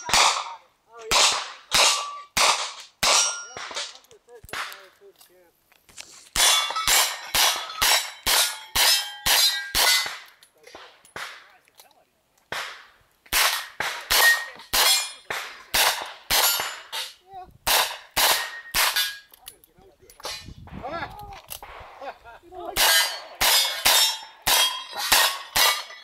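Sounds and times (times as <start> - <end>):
steel plate clanging and ringing: 3.0 - 3.9, 6.4 - 10.2, 14.2 - 15.3, 18.4 - 19.3, 22.8 - 26.0.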